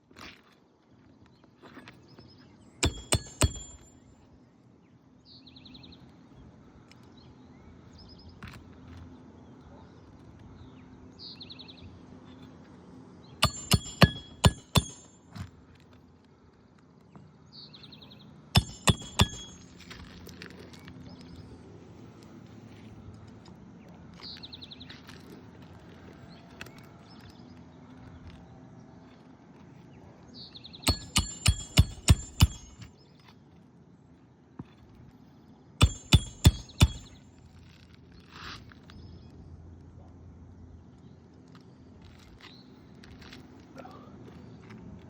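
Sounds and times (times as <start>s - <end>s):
hammer striking roofing nails: 2.8s - 3.9s, 13.4s - 15.2s, 18.6s - 19.7s, 30.9s - 32.9s, 35.8s - 37.2s.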